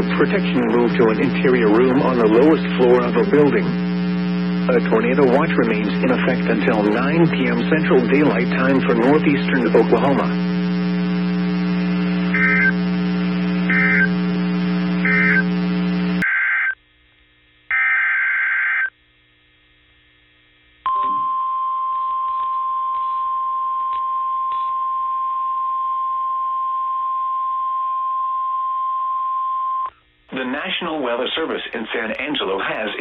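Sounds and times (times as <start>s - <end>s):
high data bursts: 0.0s - 16.7s
steady radio buzz: 0.0s - 16.8s
steady warning alarm tone: 12.0s - 16.2s.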